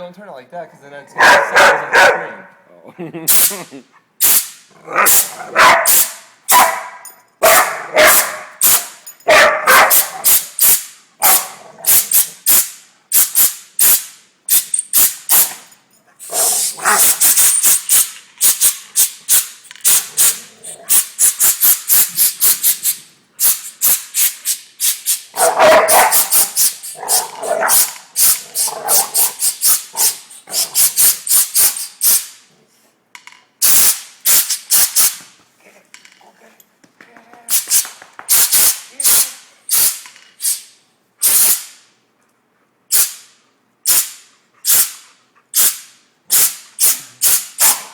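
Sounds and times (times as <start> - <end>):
dog barking: 1.2 - 2.5, 4.9 - 8.6, 9.3 - 10.3, 11.2 - 11.6, 16.3 - 17.2, 25.4 - 26.4, 27.0 - 27.9, 47.6 - 47.9
air gun blasts hissing: 3.3 - 6.6, 8.0 - 9.0, 9.8 - 15.6, 16.2 - 32.4, 33.6 - 35.2, 37.5 - 41.8, 42.9 - 47.9.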